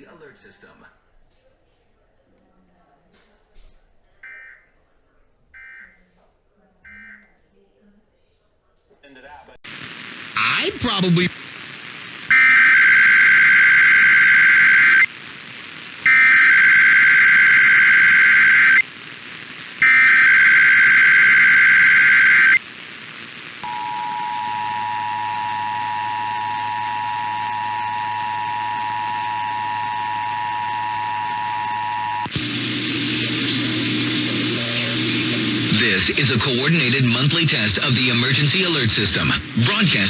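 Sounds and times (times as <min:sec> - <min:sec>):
two-tone attention signal: 0:04.2 - 0:04.7, 0:05.6 - 0:05.9, 0:06.9 - 0:07.3.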